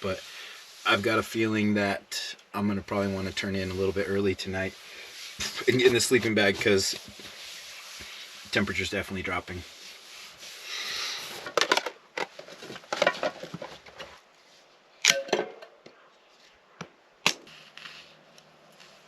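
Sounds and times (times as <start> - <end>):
rustling: 2.6 - 14.8.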